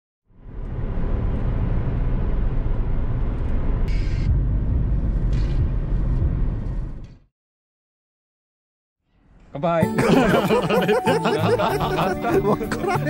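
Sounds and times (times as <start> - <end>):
car driving rumble: 0.3 - 7.3.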